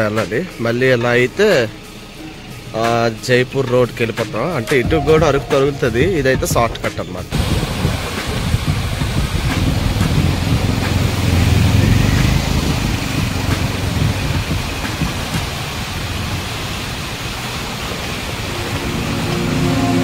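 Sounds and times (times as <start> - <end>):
background music: 0.0 - 16.5, 17.9 - 20.0
wind noise: 7.3 - 19.1
vehicle road noise: 7.3 - 20.0.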